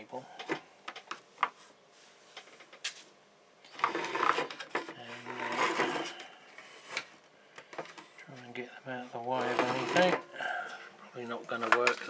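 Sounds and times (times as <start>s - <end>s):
wires rubbing and scraping: 3.7s - 7.2s, 9.1s - 10.8s.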